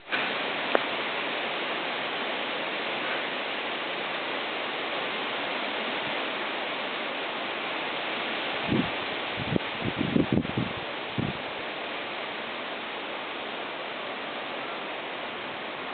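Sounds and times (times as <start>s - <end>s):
strong wind blowing: 8.5s - 11.5s.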